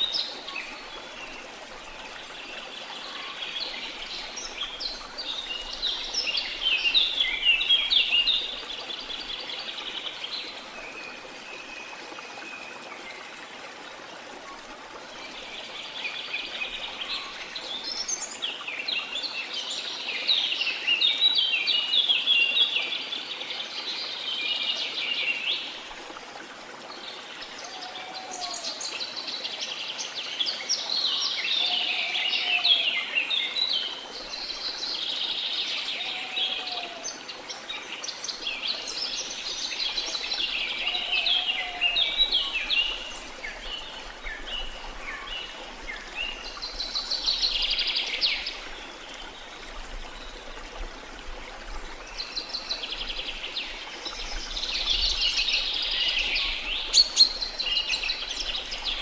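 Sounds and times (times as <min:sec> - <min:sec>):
waterfall: 0:00.0 - 0:59.0
birds chirping and trilling: 0:54.4 - 0:59.0.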